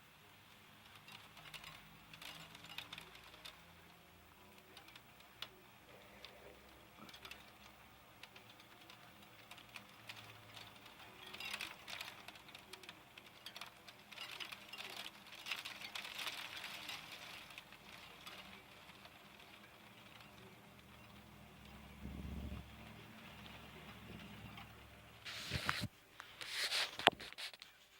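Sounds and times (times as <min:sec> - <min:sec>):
hailstones striking hard surface: 0:07.0 - 0:24.2.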